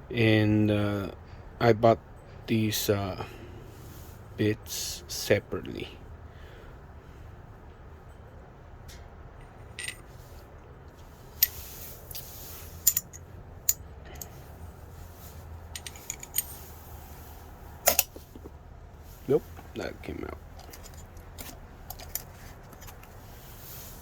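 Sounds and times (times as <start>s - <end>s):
metal screwdriver bits clicking: 9.8s - 10.0s, 11.4s - 14.4s, 15.8s - 16.6s, 17.8s - 18.4s, 20.6s - 23.1s.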